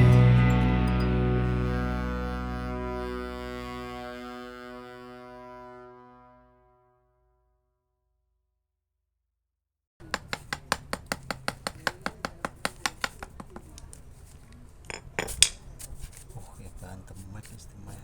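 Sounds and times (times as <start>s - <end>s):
metal tool clicking on wood: 10.0s - 14.1s, 14.8s - 15.7s.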